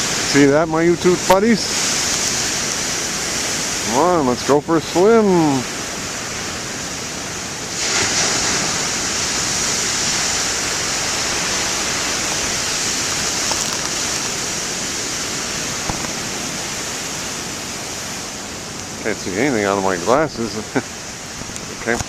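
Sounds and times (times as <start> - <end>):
ocean waves breaking: 0.0 - 22.0
hissing spray: 1.2 - 6.5, 7.6 - 18.4.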